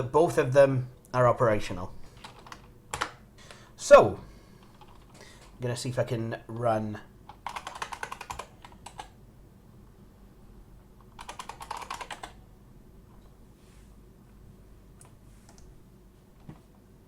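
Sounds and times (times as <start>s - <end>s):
typing on a keyboard: 2.2s - 3.2s, 7.3s - 9.1s, 11.0s - 12.4s.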